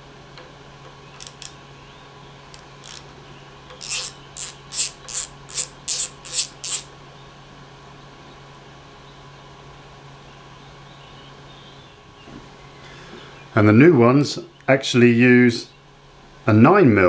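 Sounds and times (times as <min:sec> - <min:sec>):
ratchet strokes: 0:01.2 - 0:01.6, 0:02.5 - 0:03.1, 0:03.8 - 0:06.9
socket ratchet clicks: 0:01.2 - 0:01.6, 0:02.5 - 0:03.1, 0:03.8 - 0:06.9.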